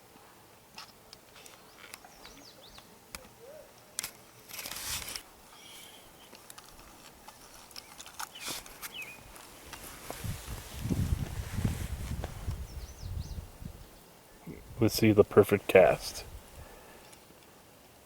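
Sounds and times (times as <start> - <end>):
faint bird chirps: 5.5 - 6.4.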